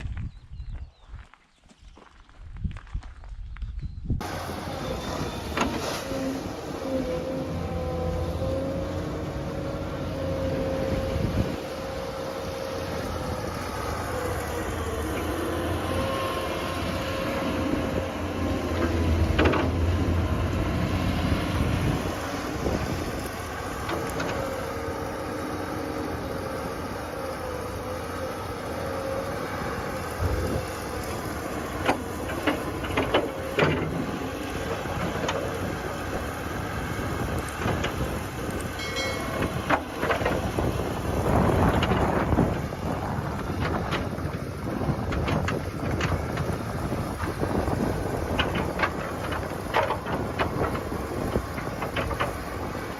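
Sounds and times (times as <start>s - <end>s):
heavy machinery rumbling and whining: 4.2s - 52.9s
sharp metallic knocks: 38.8s - 40.4s.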